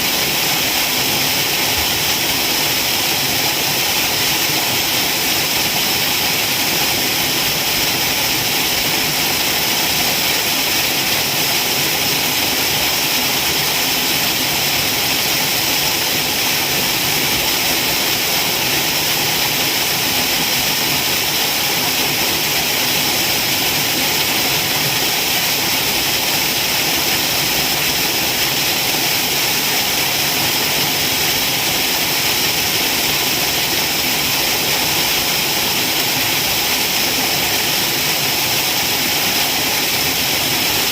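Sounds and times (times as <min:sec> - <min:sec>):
waterfall rushing: 0:00.0 - 0:40.9.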